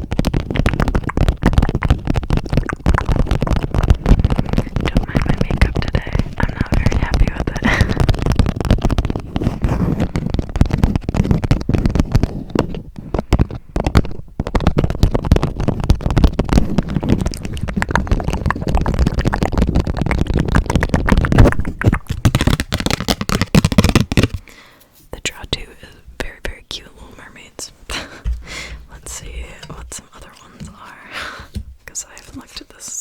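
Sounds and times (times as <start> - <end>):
fast tapping on playing cards: 0.0 - 24.5.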